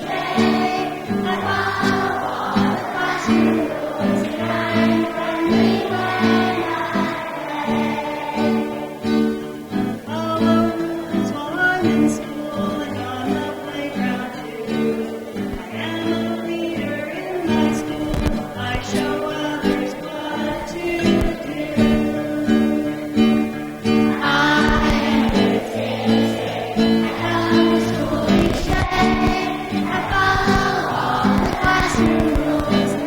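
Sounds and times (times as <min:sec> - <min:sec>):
acoustic guitar strumming chords: 0:00.0 - 0:33.0
children singing: 0:00.0 - 0:33.0.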